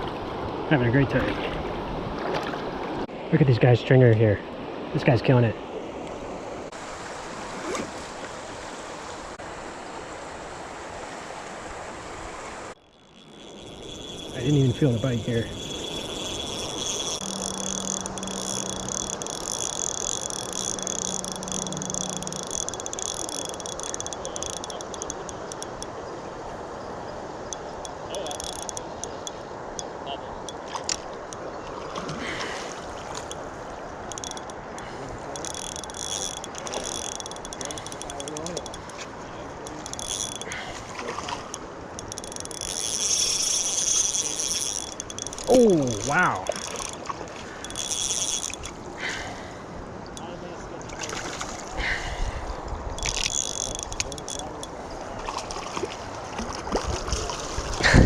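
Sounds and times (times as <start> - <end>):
river water flowing: 0.0 - 58.0
fishing reel whirring: 12.8 - 25.9, 27.4 - 29.9, 30.5 - 31.4, 33.1 - 49.6, 52.9 - 55.6
low steady hum: 12.9 - 25.8
light ticks: 13.5 - 25.9, 33.1 - 40.5, 41.4 - 48.8, 52.9 - 55.0.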